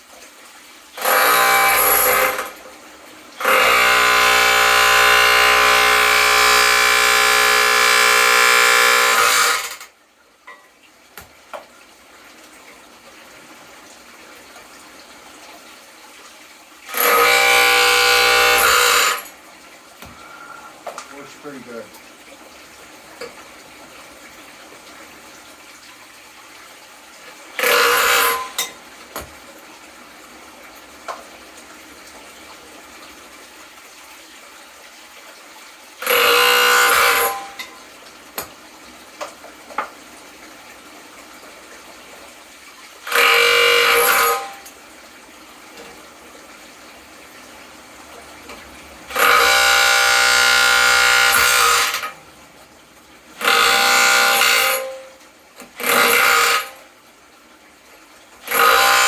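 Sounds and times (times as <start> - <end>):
impact drill whining: 1.0 - 2.5, 3.4 - 9.8, 16.9 - 19.2, 49.2 - 52.0.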